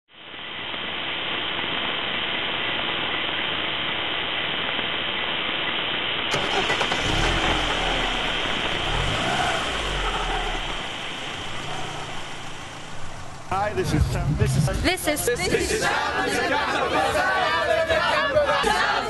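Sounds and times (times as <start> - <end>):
vehicle engine running: 6.3 - 14.9.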